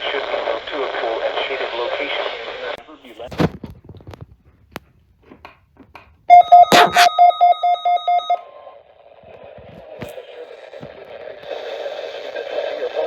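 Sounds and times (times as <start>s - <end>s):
radio static and hiss: 0.0s - 3.3s, 6.7s - 7.1s, 10.0s - 13.0s
rapid loud alarm beeps: 6.3s - 8.4s.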